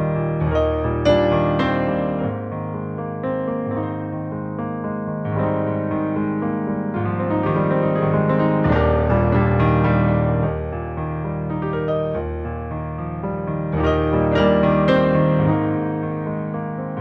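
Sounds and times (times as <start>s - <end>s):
slow piano chords: 0.0s - 17.0s.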